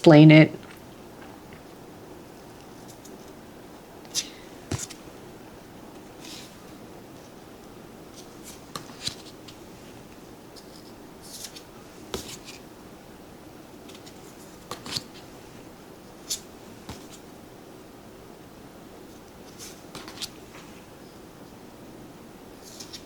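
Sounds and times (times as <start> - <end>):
cards clicking and rustling: 20.0 - 20.3.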